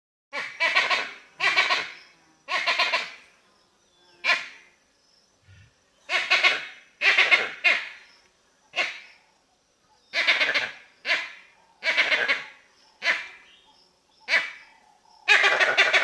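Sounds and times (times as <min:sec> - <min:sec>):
monkey giving harsh calls: 0:00.3 - 0:03.2, 0:06.1 - 0:08.0, 0:10.1 - 0:13.4, 0:15.2 - 0:16.0.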